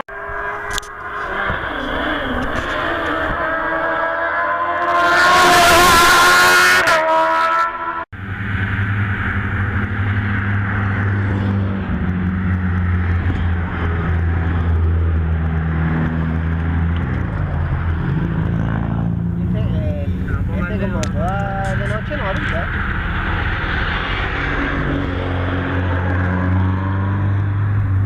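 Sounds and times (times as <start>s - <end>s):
race car engine at high revs: 0.1s - 28.0s
low engine drone: 7.8s - 28.0s.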